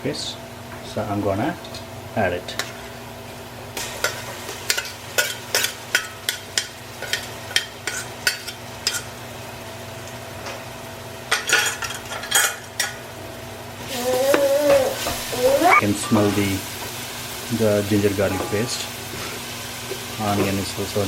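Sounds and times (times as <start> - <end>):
onions frying in oil: 1.2 - 21.0
utensil scraping frying pan: 3.8 - 9.2.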